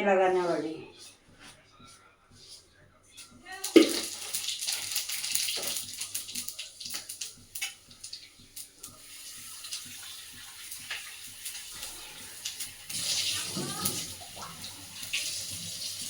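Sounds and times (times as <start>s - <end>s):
seeds sizzling and popping in oil: 3.6s - 13.2s.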